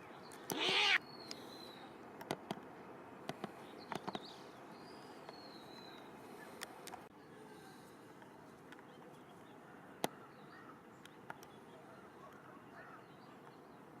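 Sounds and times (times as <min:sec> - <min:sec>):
distant birds chirping: 0:00.2 - 0:01.9.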